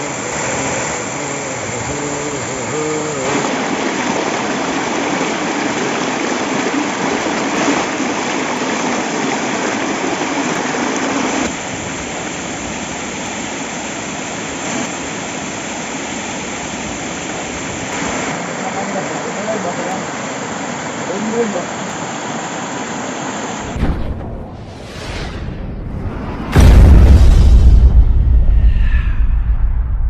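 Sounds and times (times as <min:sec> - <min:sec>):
waterfall rushing: 0:00.0 - 0:23.9.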